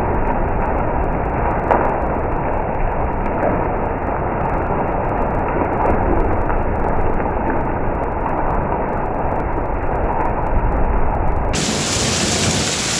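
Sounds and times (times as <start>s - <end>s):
hail and heavy rain: 11.6s - 12.9s.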